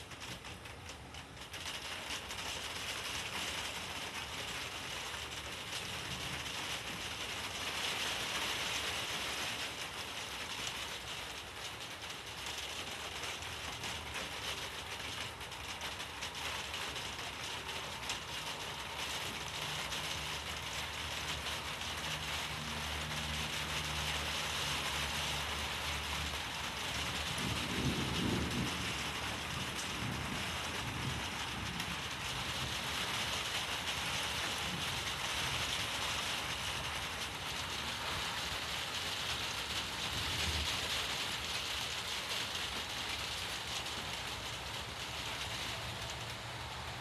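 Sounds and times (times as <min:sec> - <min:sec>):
rain hissing: 0:00.0 - 0:47.0
low thunder rumble: 0:26.6 - 0:35.2.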